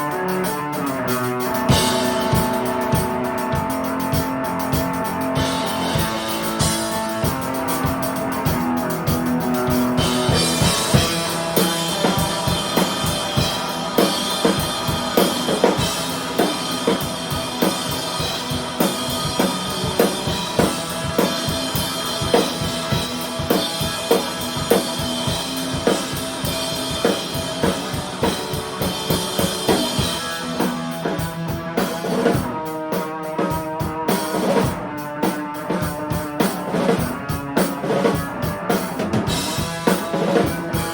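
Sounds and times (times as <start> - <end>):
held guitar chords: 0.0 - 32.7
drum kit beat: 0.0 - 40.9.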